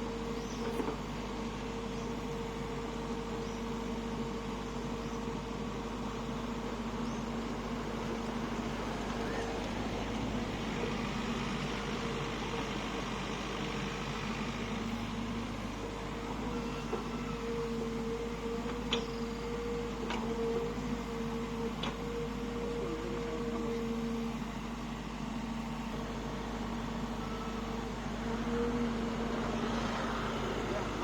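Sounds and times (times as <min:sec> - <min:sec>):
diesel engine humming: 0:00.0 - 0:31.0.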